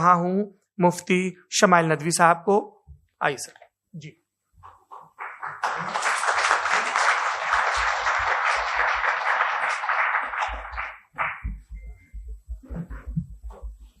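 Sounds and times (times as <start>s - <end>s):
audience applauding: 5.2s - 11.7s
low thumps: 11.1s - 14.0s.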